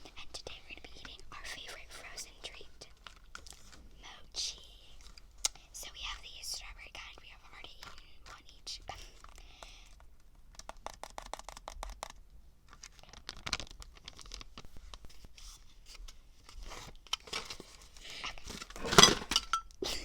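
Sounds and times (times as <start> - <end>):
wrapper tearing and crinkling: 9.2 - 15.4.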